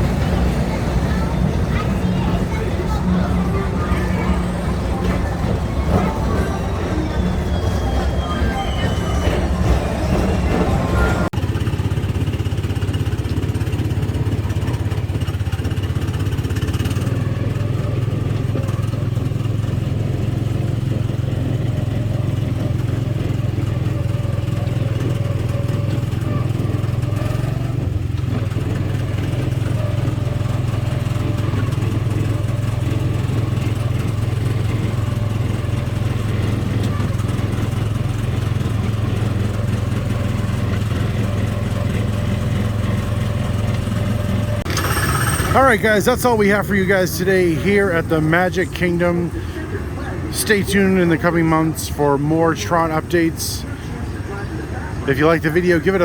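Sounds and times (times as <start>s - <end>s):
small gasoline engine running: 11.3s - 56.0s.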